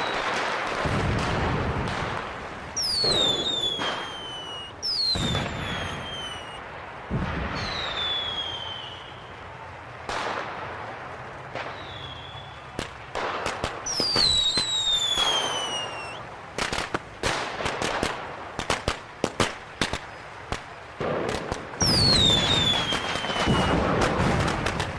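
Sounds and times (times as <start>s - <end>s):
firework falling whistles: 0.0s - 0.6s, 2.8s - 6.6s, 7.5s - 9.4s, 11.6s - 12.8s, 13.6s - 16.2s, 21.8s - 24.9s
fireworks bangs and crackling: 0.0s - 24.9s.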